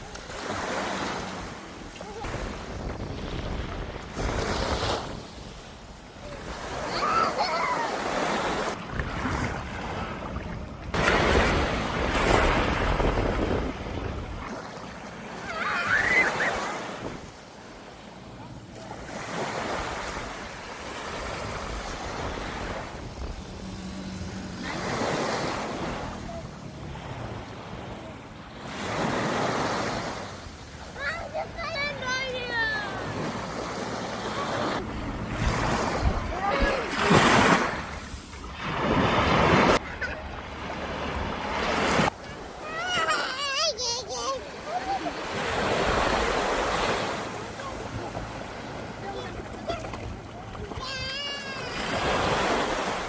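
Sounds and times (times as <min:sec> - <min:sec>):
sea waves washing in: 0:00.0 - 0:53.0
wind buffeting microphone: 0:01.7 - 0:05.6, 0:08.8 - 0:14.6, 0:21.4 - 0:24.7, 0:34.8 - 0:37.2.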